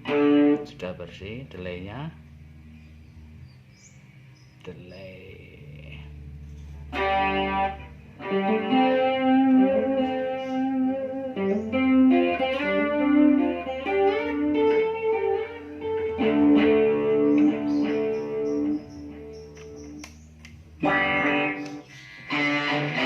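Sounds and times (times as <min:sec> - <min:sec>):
guitar with delay effect: 0:00.0 - 0:04.0, 0:05.3 - 0:23.0.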